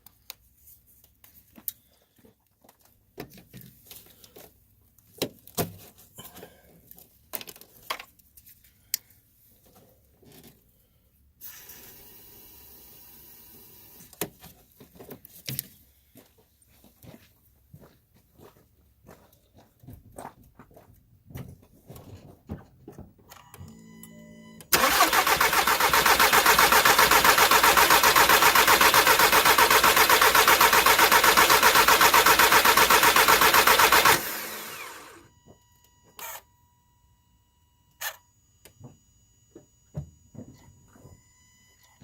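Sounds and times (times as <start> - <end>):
car starter cranking: 24.7 - 35.2
engine spinning down: 24.7 - 35.3.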